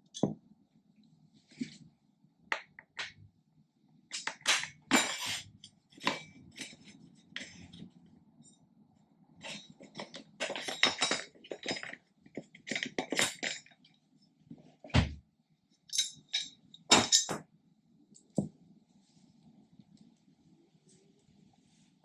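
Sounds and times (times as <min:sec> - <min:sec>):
metal hardware clinking and rattling: 0:09.4 - 0:13.8, 0:15.9 - 0:17.4.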